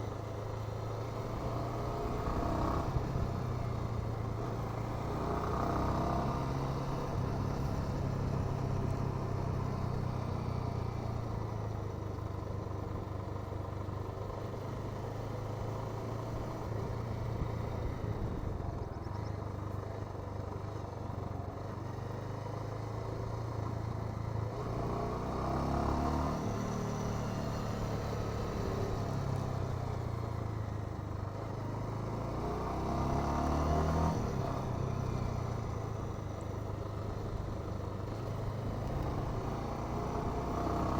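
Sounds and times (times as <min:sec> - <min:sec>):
motorcycle engine revving: 0:36.9 - 0:40.9.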